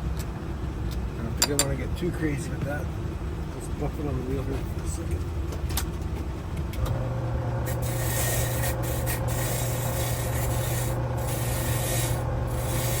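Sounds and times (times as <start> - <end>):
buffing wheel motor hum: 6.8 - 13.0
metal rasping on buffing wheel: 7.6 - 13.0.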